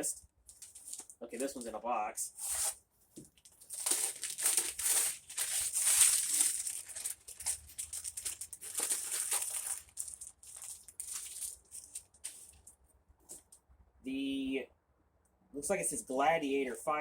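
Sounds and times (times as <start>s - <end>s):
wrapping paper crinkling and tearing: 0.5s - 1.8s, 2.4s - 12.7s.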